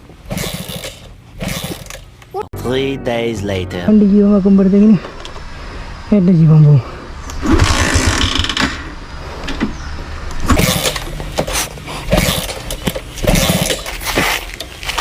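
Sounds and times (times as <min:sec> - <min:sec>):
motorcycle kick-start attempts: 0:00.3 - 0:02.3, 0:10.4 - 0:15.0.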